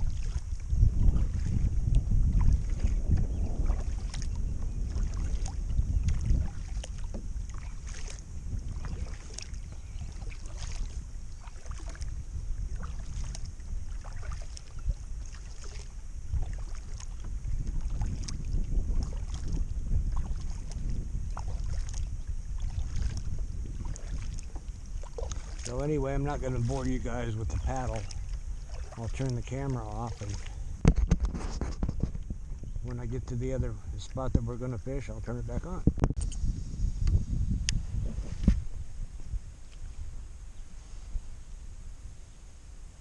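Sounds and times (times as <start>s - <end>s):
paddle splashing in water: 0.0s - 33.1s
wind rumble on microphone: 0.0s - 43.0s.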